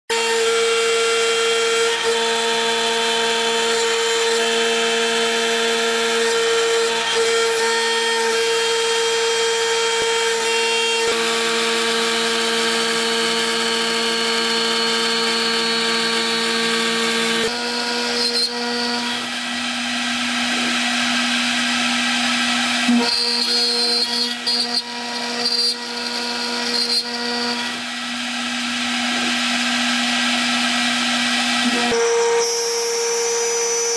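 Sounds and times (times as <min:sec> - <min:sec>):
milling spindle whining: 0:17.3 - 0:33.9.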